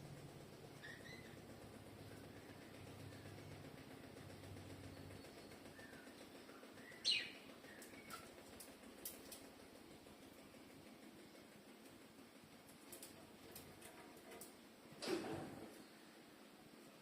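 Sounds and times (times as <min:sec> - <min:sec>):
lovebird chirping: 0:06.8 - 0:08.2.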